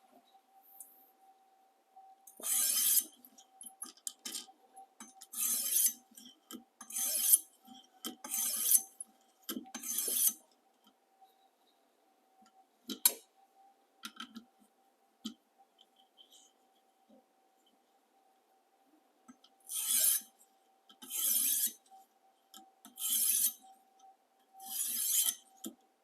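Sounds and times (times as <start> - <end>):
faint steady hum: 0.0 - 26.0
knife scraping on sharpening stone: 2.4 - 3.1, 5.4 - 6.0, 6.9 - 7.5, 8.2 - 8.9, 9.8 - 10.4, 19.7 - 20.3, 21.1 - 21.8, 23.0 - 23.6, 24.6 - 25.4.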